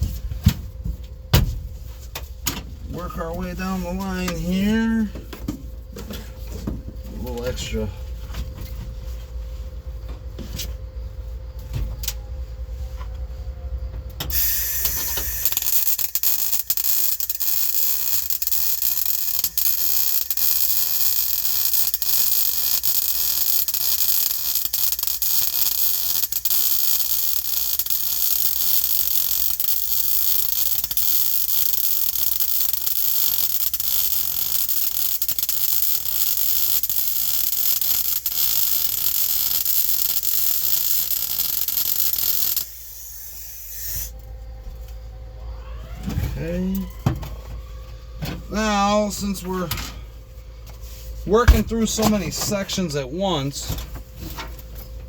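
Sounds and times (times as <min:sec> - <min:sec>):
welding arc crackling: 0:14.3 - 0:44.1, 0:51.3 - 0:53.6
low hum: 0:42.6 - 0:55.0.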